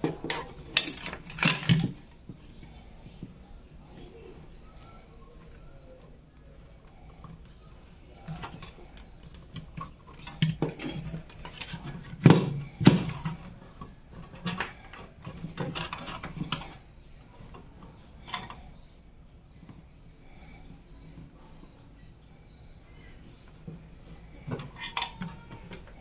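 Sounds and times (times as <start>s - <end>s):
computer case parts clicking and knocking: 0.0s - 3.3s, 8.2s - 18.7s.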